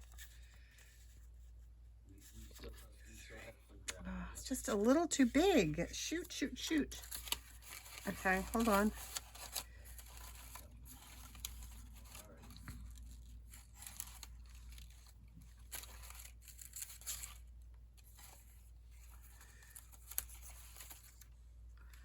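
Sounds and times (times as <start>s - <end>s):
paper rustling and crinkling: 4.8s - 22.0s.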